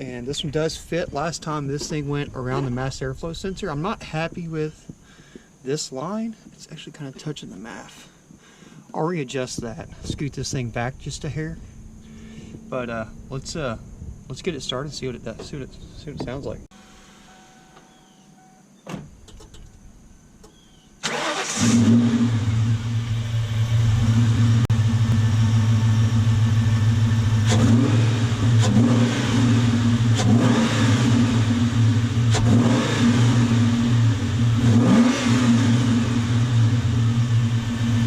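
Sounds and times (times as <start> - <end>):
engine cranking and starting: 20.5 - 24.6
engine idling: 20.5 - 30.1, 35.7 - 38.0.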